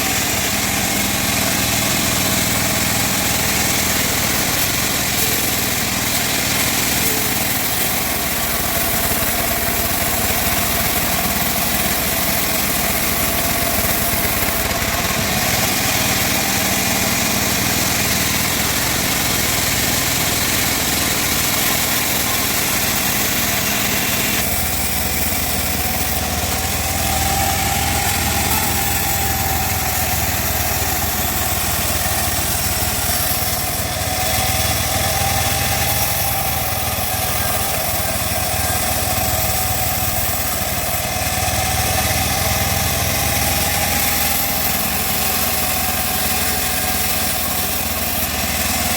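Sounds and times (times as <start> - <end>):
band saw motor drone: 0.0 - 48.9
faint saw whine: 0.0 - 48.9.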